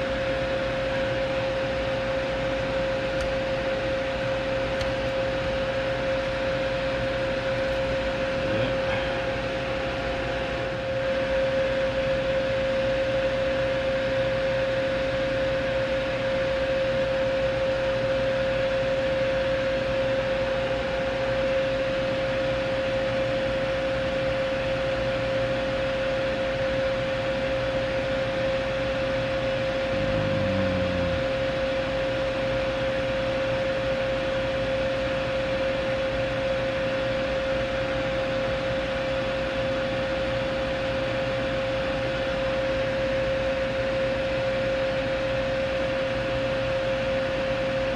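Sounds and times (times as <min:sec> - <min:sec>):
bench fan whirring: 0:00.0 - 0:12.6, 0:29.7 - 0:31.4.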